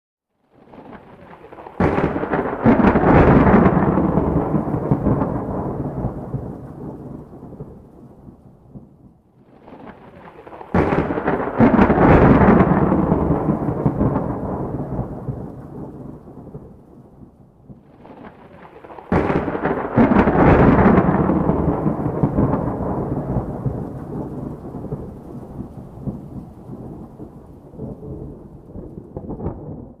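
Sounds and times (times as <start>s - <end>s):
thunderclaps with rolling rumble: 0.6s - 30.0s.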